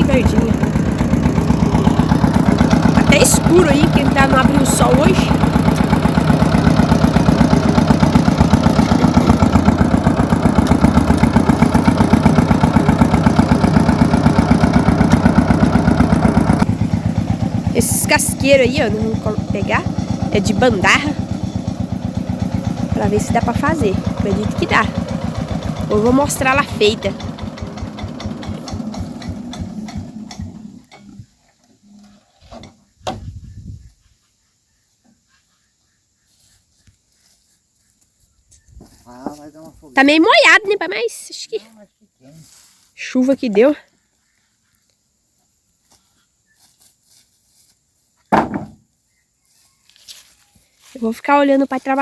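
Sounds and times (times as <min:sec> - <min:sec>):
diesel tractor engine running: 0:00.0 - 0:31.2
sharp knocks: 0:48.3 - 0:48.8.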